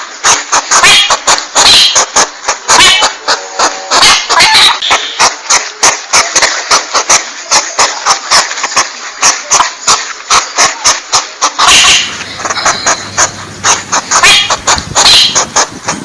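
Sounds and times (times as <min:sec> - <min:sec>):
porcupine sharp clicks: 0:12.2 - 0:15.6.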